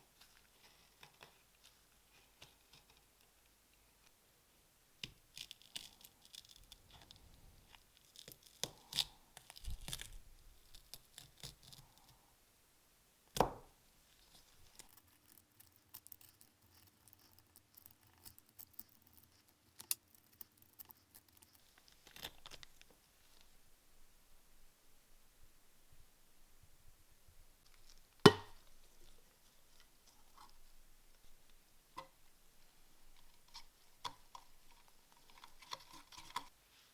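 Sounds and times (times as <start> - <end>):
sharp knock: 28.3 - 28.5.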